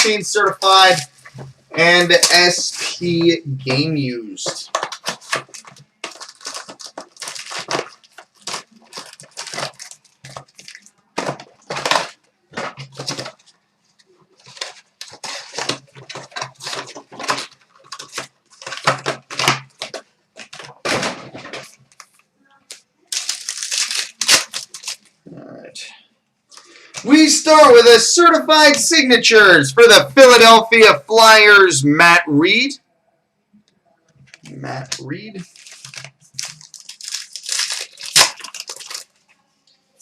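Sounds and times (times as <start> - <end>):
plastic wrappers crinkling and tearing: 0.0 - 25.2, 34.2 - 39.4.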